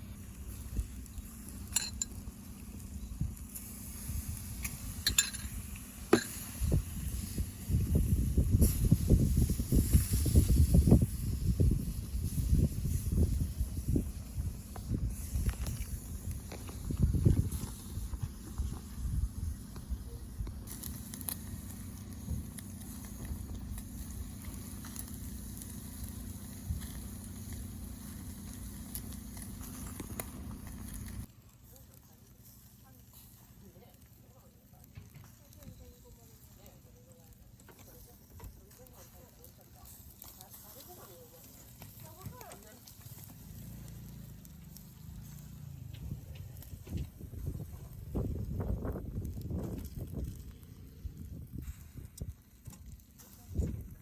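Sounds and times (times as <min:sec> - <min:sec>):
low rumble of fire: 0:00.0 - 0:54.0
wood fire crackling and popping: 0:00.0 - 0:54.0
metal utensils clinking on grill: 0:01.5 - 0:02.4, 0:04.6 - 0:06.7
low rumbling: 0:43.2 - 0:52.6.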